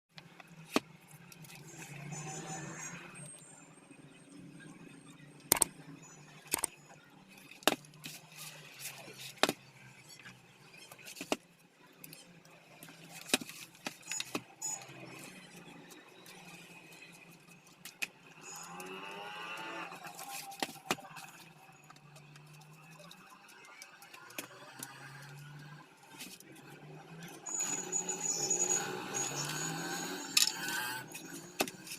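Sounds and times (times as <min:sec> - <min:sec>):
sharp clicks and knocks: 0:05.4 - 0:05.8.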